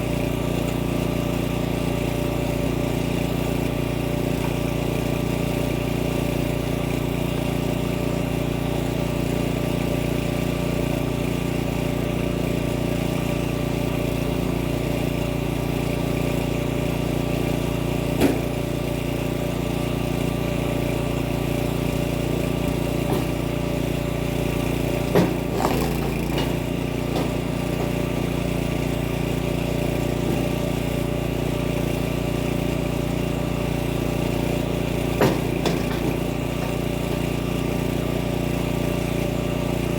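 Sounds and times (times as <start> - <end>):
small petrol engine running: 0.0 - 39.9
sharp knocks: 25.1 - 28.0, 35.2 - 36.8.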